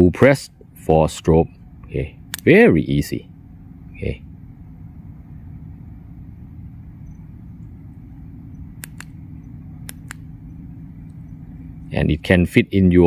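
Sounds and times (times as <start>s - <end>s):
low background rumble: 0.0s - 13.0s
flashlight switch clicking: 2.3s - 2.5s, 8.8s - 9.2s, 9.8s - 10.3s.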